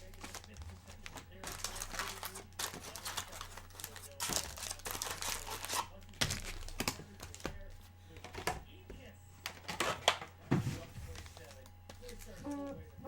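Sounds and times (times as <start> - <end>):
card pack wrappers crinkling and tearing: 0.0 - 7.6, 11.1 - 12.7.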